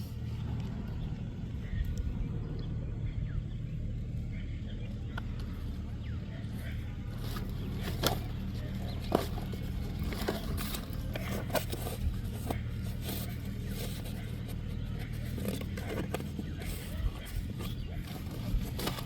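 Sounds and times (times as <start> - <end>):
low motor hum: 0.0 - 19.0
scraping and clicking handling: 6.5 - 19.0.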